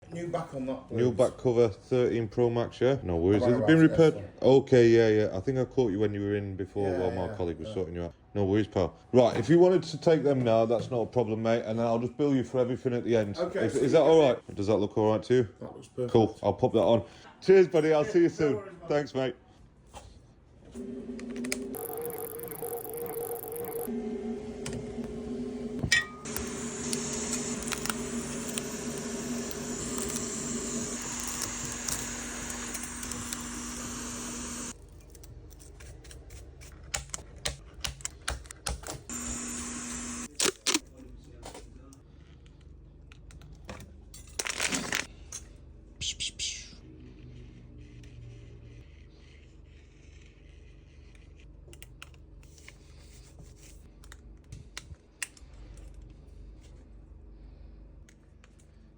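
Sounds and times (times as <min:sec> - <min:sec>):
mechanical hum: 0:20.6 - 0:35.2, 0:39.1 - 0:40.3.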